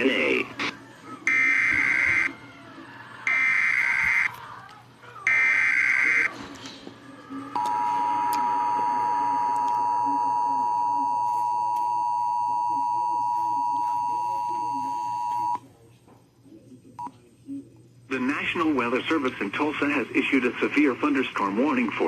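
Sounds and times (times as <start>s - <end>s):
two-tone attention signal: 7.6s - 15.6s.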